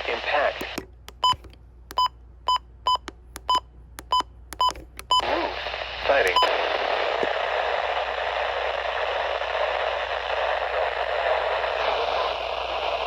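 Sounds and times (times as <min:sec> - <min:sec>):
broadcast voice: 0:00.0 - 0:00.8, 0:05.2 - 0:07.3
radio static hiss: 0:00.0 - 0:00.8, 0:05.2 - 0:13.0.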